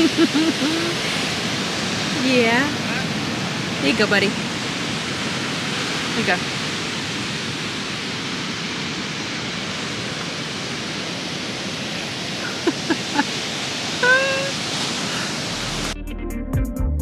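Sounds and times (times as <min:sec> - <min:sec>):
surf on a beach: 0:00.0 - 0:16.0
wind: 0:00.0 - 0:16.0
music: 0:15.6 - 0:17.0.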